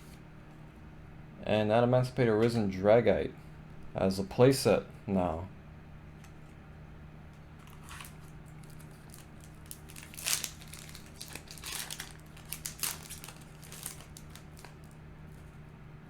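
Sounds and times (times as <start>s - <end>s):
foil wrapper crinkling and tearing: 7.6s - 15.6s.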